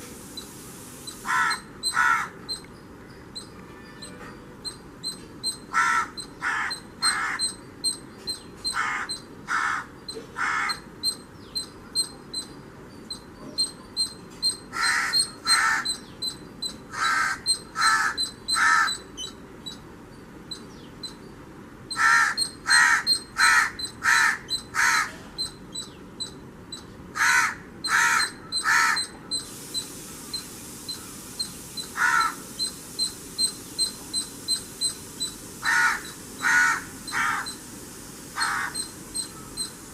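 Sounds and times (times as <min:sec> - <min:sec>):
crow cawing: 0:01.2 - 0:02.4, 0:05.7 - 0:07.6, 0:08.7 - 0:10.8, 0:14.7 - 0:15.9, 0:16.9 - 0:19.0, 0:21.9 - 0:25.2, 0:27.2 - 0:29.1, 0:32.0 - 0:32.4, 0:35.6 - 0:37.6, 0:38.4 - 0:38.9
faint high-pitched ticking: 0:29.0 - 0:36.4.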